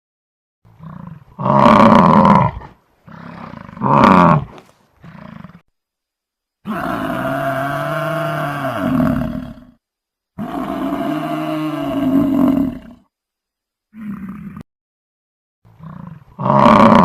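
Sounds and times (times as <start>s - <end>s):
dinosaur roar: 0.8s - 5.6s, 6.6s - 9.8s, 10.4s - 13.1s, 13.9s - 14.6s, 15.8s - 17.0s.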